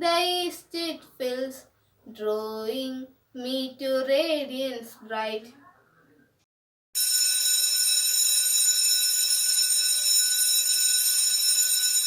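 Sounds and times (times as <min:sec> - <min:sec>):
electric alarm ringing: 0:07.0 - 0:12.0.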